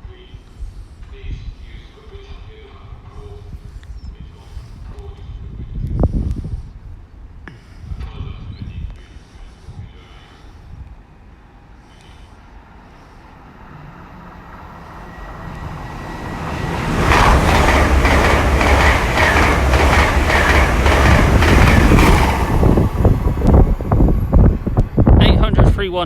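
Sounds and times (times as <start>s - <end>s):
train passing at speed: 10.2s - 26.0s.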